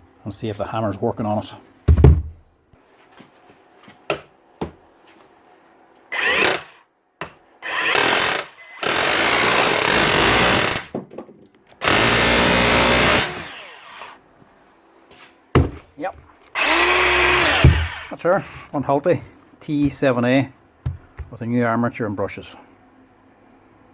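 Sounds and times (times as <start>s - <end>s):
hammer drill striking steel: 6.2s - 10.9s, 16.6s - 18.1s.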